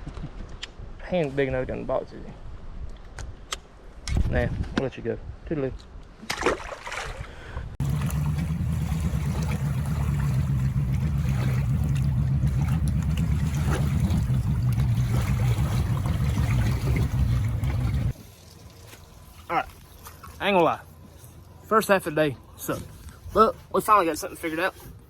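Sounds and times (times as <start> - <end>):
outboard motor running: 7.8 - 18.2
water rushing along hull: 7.8 - 21.7.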